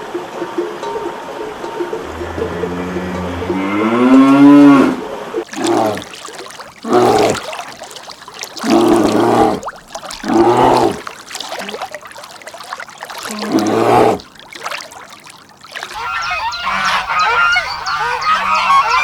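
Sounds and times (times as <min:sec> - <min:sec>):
cattle mooing: 0:08.5 - 0:11.1, 0:13.2 - 0:14.2.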